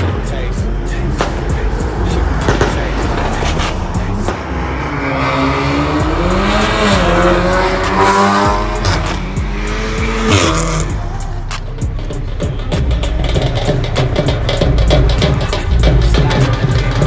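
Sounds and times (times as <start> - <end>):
car driven hard: 0.0 - 17.0
music: 0.0 - 17.0.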